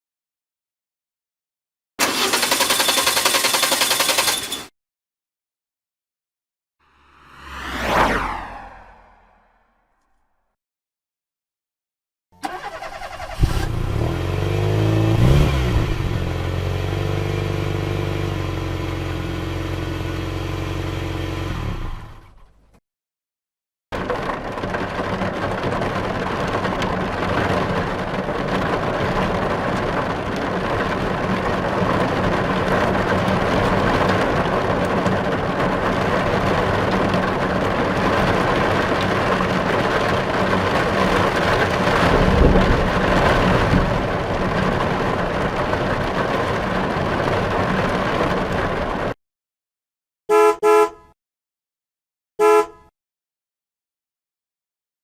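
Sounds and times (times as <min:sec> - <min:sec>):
car engine and road noise: 0:06.8 - 0:10.3, 0:12.4 - 0:22.8, 0:23.9 - 0:49.2
car horn beeps: 0:50.3 - 0:51.2, 0:52.4 - 0:52.9.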